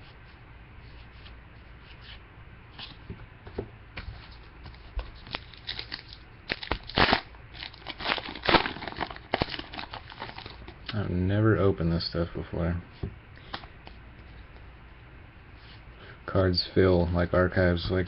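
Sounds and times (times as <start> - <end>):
cards being handled: 0.9 - 10.9
wrapper tearing and crinkling: 5.3 - 10.7.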